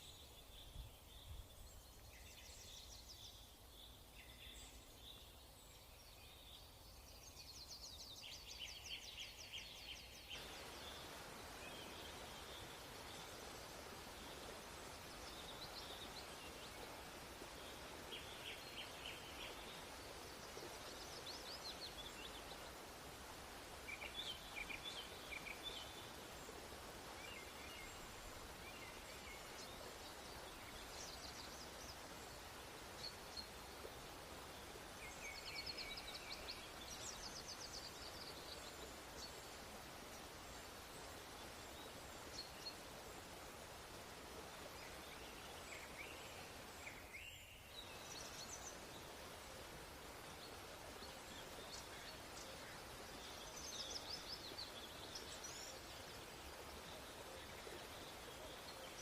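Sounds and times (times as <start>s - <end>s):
faint birds chirping: 0.0s - 59.0s
steady low hiss: 0.0s - 59.0s.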